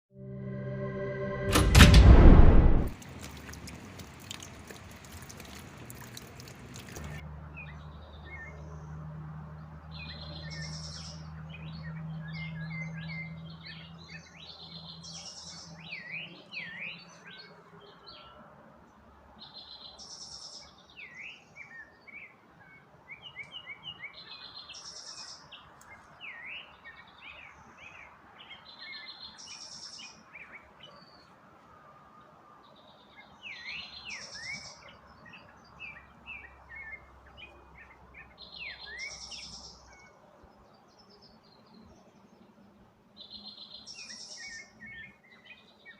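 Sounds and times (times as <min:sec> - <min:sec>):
birds chirping: 0:03.0 - 0:09.0, 0:32.7 - 0:45.9.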